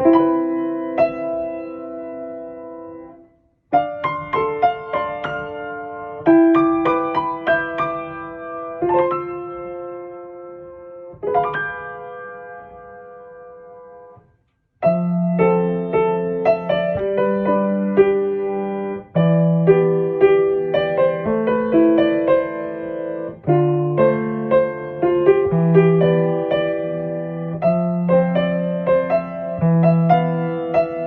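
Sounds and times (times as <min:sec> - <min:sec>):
gentle piano music: 0:00.0 - 0:31.0.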